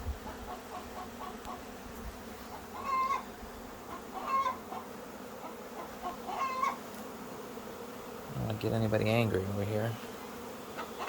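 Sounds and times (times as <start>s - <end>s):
honey bee swarm humming: 0.0s - 11.0s
chicken squawks: 2.7s - 3.3s, 3.9s - 4.8s, 5.8s - 6.8s.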